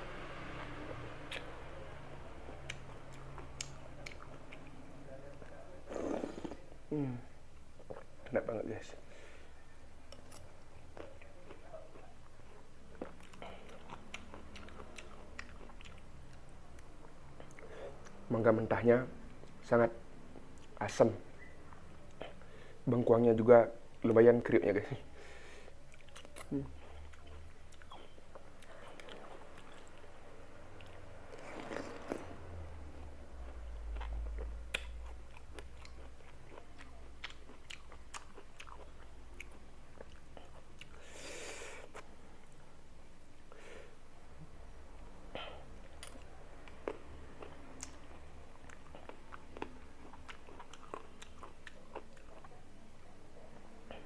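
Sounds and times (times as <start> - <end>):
crunchy fruit chewing: 0.1 - 1.6, 9.6 - 19.7, 24.8 - 44.1, 44.9 - 54.0.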